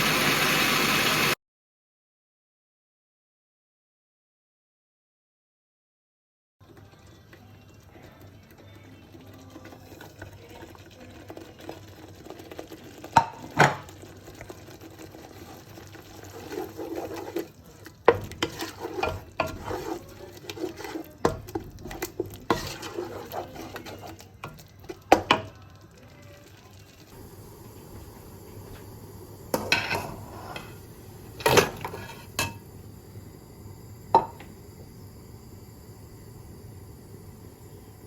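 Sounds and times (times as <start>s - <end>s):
stirring curry in a pot: 6.6s - 28.6s
metal utensil clinking on pot: 31.4s - 32.6s.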